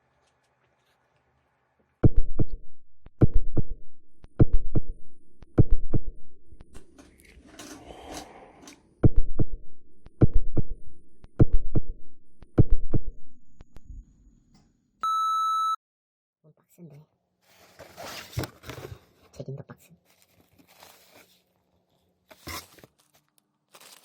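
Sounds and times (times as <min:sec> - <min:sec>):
soft rustling: 0:20.0 - 0:24.0.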